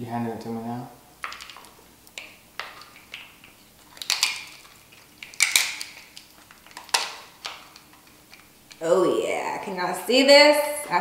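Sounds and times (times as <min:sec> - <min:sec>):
crab shell cracking: 0:01.2 - 0:08.8.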